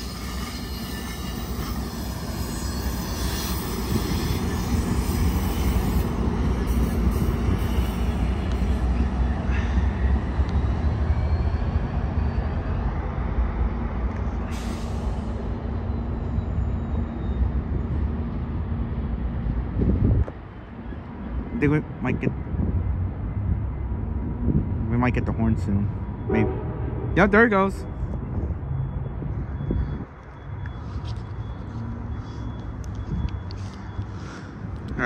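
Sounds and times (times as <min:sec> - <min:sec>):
faint high wheel squeal: 0:00.0 - 0:13.0, 0:14.6 - 0:18.1, 0:26.0 - 0:34.6
diesel train rumbling past: 0:00.0 - 0:35.0.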